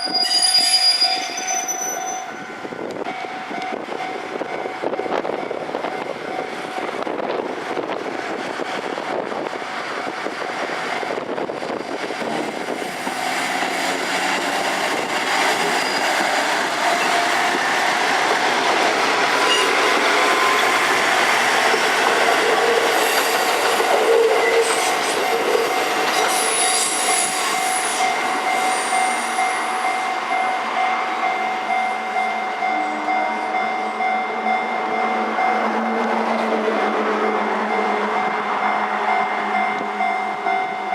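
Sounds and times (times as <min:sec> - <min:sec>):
wheels squealing: 0:00.0 - 0:02.4, 0:14.9 - 0:17.3, 0:24.1 - 0:28.1
diesel railcar rumbling: 0:00.0 - 0:40.9.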